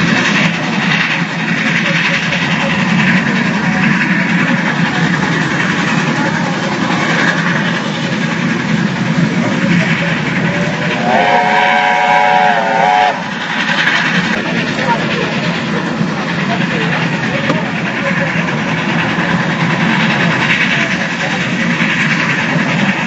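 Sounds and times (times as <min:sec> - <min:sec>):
steam train rumbling: 0:00.0 - 0:23.0
steam whistle: 0:11.0 - 0:13.3.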